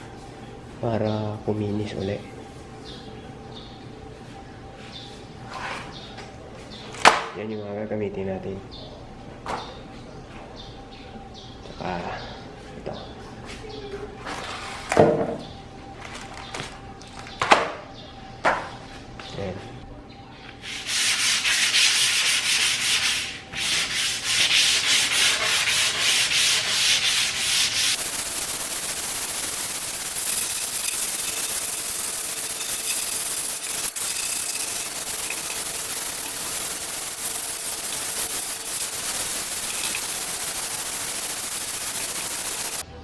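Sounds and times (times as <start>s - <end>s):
sandpaper scraping wood: 20.6s - 42.8s.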